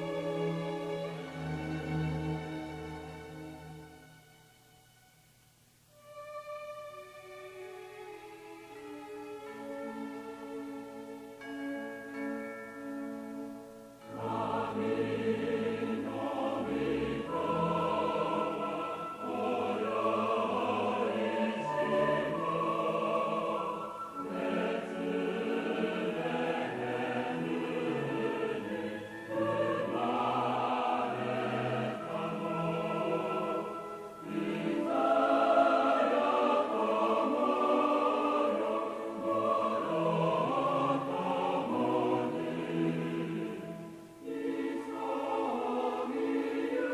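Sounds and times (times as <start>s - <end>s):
choir singing a hymn: 0.0s - 4.2s, 14.0s - 46.9s.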